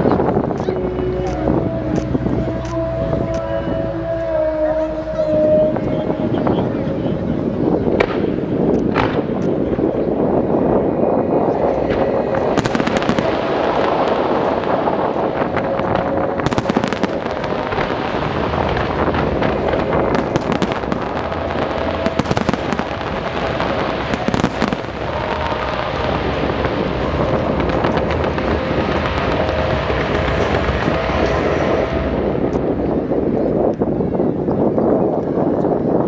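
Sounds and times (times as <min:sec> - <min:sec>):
continuous din: 0:00.0 - 0:36.0
fireworks crackling bursts: 0:11.6 - 0:33.8.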